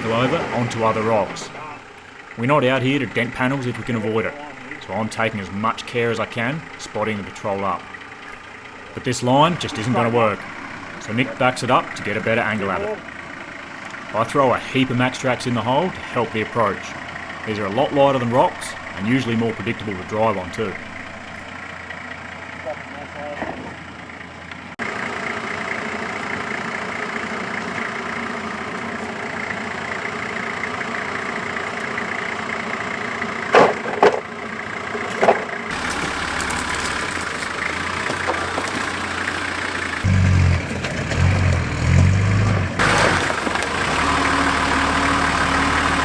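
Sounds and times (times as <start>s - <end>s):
engine running at low revs: 0.0s - 33.6s, 34.3s - 46.0s.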